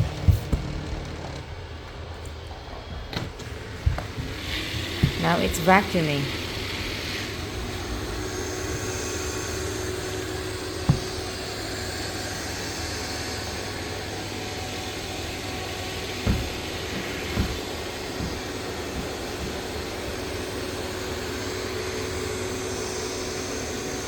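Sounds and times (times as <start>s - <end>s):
dull thumps: 0.0s - 1.4s, 4.8s - 6.0s, 10.7s - 11.8s, 15.9s - 19.8s
robot vacuum whirring: 13.7s - 20.4s.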